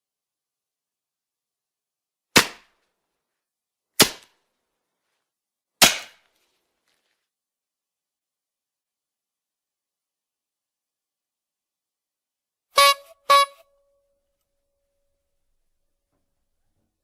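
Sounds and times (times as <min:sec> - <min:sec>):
cartoon sharp cracks: 0:02.4 - 0:02.8, 0:04.0 - 0:04.4, 0:05.8 - 0:06.3.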